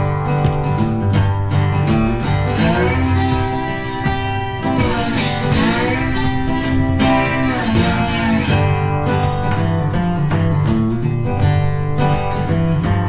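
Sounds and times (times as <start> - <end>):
strummed acoustic guitar music: 0.0 - 13.0.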